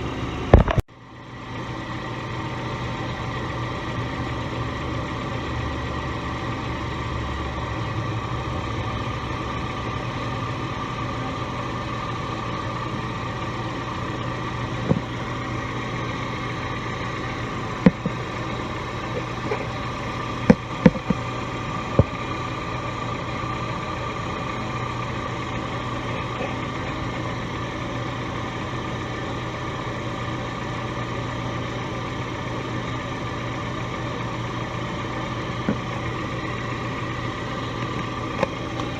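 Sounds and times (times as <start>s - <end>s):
vehicle engine humming: 0.0s - 38.9s
sharp clicks or knocks: 0.5s - 0.8s, 17.8s - 18.2s, 20.4s - 21.2s.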